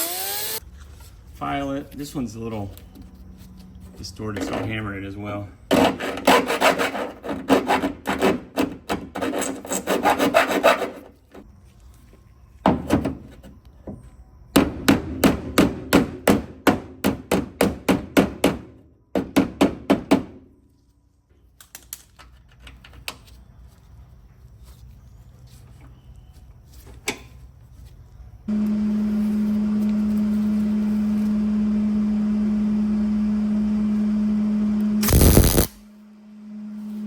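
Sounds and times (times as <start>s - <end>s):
hand file on steel: 5.7s - 8.5s, 9.2s - 11.2s.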